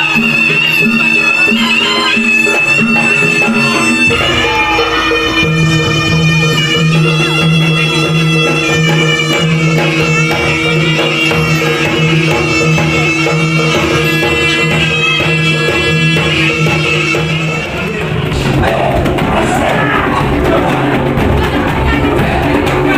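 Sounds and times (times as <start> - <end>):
wind instrument wavering melody: 0.0 - 18.4
percussion: 0.0 - 22.9
low drone: 2.9 - 7.9.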